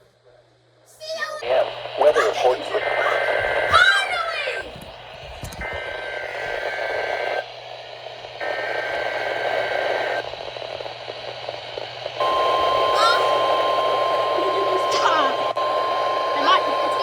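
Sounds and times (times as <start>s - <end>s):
radio static: 1.4s - 17.0s
steady warning alarm tone: 5.6s - 7.5s, 8.4s - 10.3s, 12.2s - 17.0s
two-tone data bursts: 5.6s - 7.5s, 8.4s - 17.0s.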